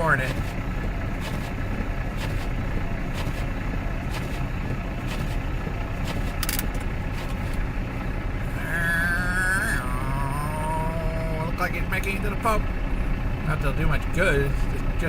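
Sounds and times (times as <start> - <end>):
car engine revving high: 0.0 - 5.4
wheels spinning in snow: 0.0 - 8.6
blizzard wind: 0.0 - 11.7.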